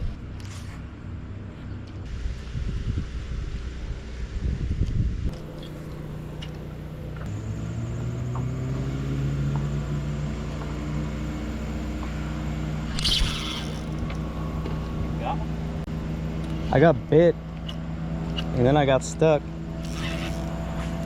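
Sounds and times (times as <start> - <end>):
boat motor running: 5.2 - 21.0.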